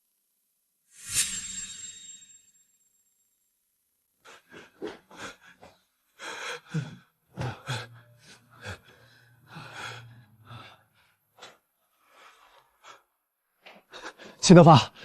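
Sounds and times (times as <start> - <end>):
man gasping breaths: 4.3 - 13.1
man moaning: 6.6 - 10.8.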